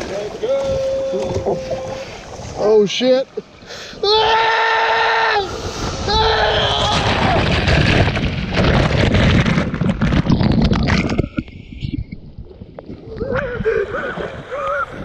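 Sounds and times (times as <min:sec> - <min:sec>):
water rushing: 0:00.0 - 0:11.7
wind buffeting camera: 0:05.4 - 0:15.0.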